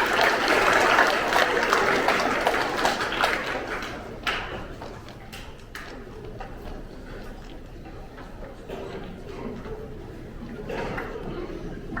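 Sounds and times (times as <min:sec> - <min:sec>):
audience applause: 0:00.0 - 0:04.4.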